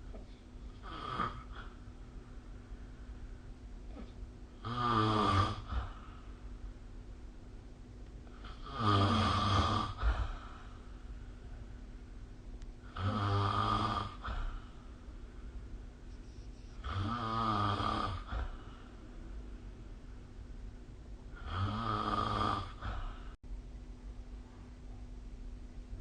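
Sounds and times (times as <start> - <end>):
steady low hum: 0.0 - 26.0
person snoring: 0.8 - 1.8, 4.6 - 6.2, 8.3 - 10.6, 12.9 - 14.7, 16.8 - 18.8, 21.4 - 23.4.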